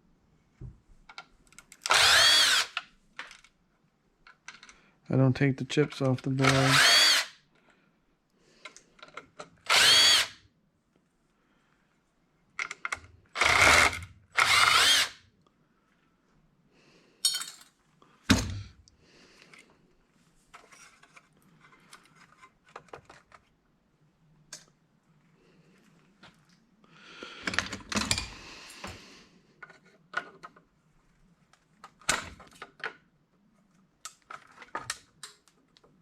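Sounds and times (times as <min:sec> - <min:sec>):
drill motor whine: 0:01.9 - 0:02.8, 0:06.4 - 0:07.3, 0:09.7 - 0:10.4, 0:13.4 - 0:15.1.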